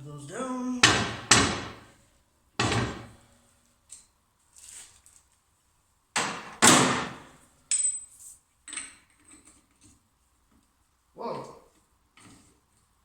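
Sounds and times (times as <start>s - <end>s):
metal clinks and knocks: 7.7s - 9.7s.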